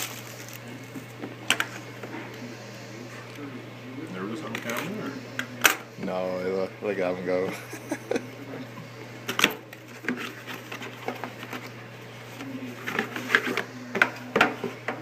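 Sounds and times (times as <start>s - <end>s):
packaging crinkling and clicking: 0.0s - 1.7s.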